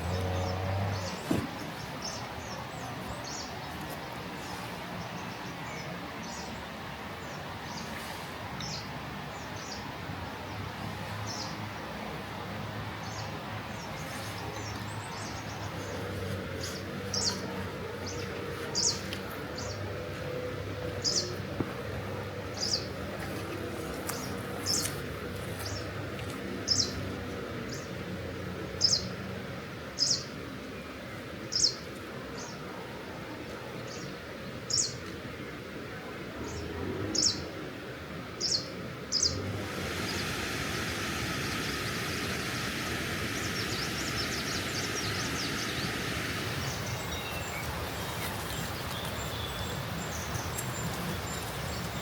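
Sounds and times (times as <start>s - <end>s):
songbird chirping: 0.0s - 8.0s, 38.4s - 52.0s
steady background hiss: 0.0s - 52.0s.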